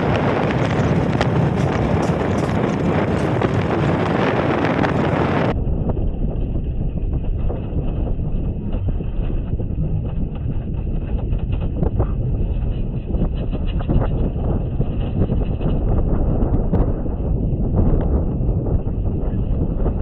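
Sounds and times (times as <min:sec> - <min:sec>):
road noise: 0:00.0 - 0:05.6
motorcycle engine running: 0:00.0 - 0:20.0
steady deep rumble: 0:00.0 - 0:20.0
wind buffeting microphone: 0:00.0 - 0:20.0.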